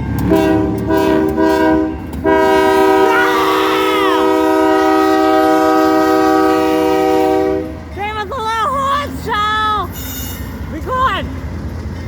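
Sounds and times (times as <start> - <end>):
locomotive air horn blasts: 0.2 - 7.9.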